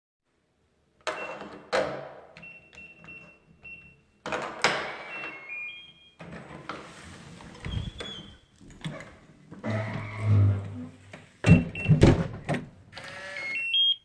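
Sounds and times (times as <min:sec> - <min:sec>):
short keypad beeps: 0:05.0 - 0:06.2, 0:13.4 - 0:14.0.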